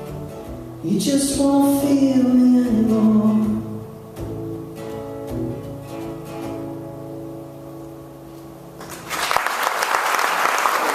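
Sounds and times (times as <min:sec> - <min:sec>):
guitar chords strummed: 0:00.0 - 0:08.9
audience applauding: 0:08.8 - 0:10.9.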